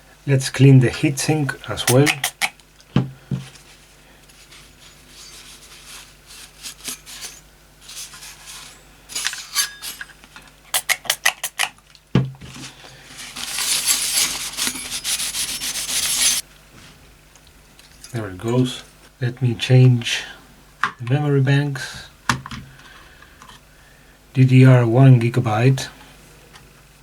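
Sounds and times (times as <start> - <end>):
heatsink being scrubbed: 1.8 - 2.5, 4.3 - 10.1, 10.7 - 11.6, 13.0 - 16.4.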